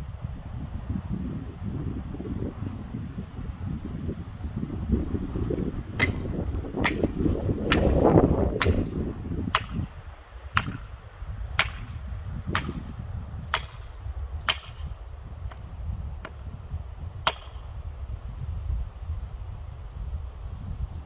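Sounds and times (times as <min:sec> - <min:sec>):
wind rumble on microphone: 0:00.0 - 0:21.0
hammer striking metal wedge: 0:06.0 - 0:08.0, 0:08.6 - 0:08.9, 0:13.5 - 0:13.8, 0:14.5 - 0:14.9, 0:17.2 - 0:17.6.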